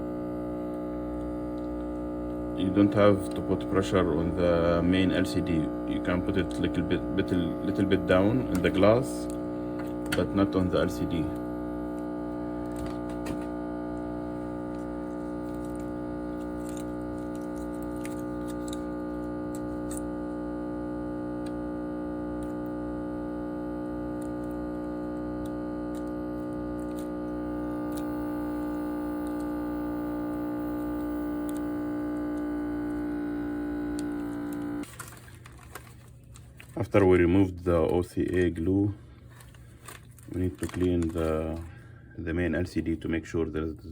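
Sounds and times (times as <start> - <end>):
sustained electronic chord: 0.0 - 34.9.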